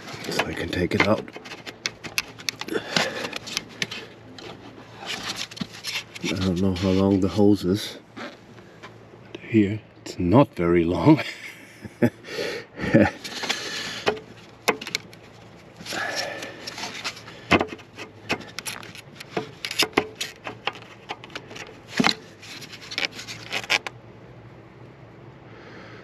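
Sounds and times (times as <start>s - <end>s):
tools clicking and scraping: 0.0s - 7.2s, 13.2s - 23.9s.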